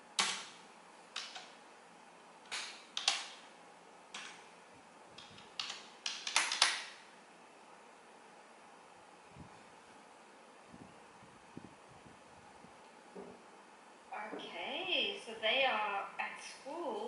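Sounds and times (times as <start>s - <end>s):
typing on computer keyboard: 0.2s - 0.6s, 1.2s - 1.6s, 2.5s - 3.4s, 5.2s - 7.0s.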